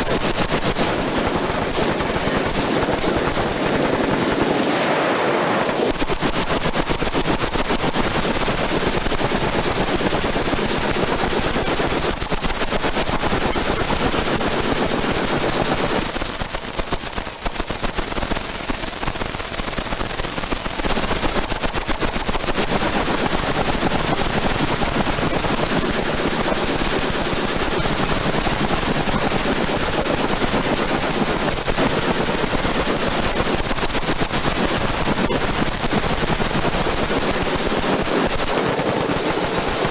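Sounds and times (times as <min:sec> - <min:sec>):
machine gun automatic fire: 0:00.0 - 0:39.9.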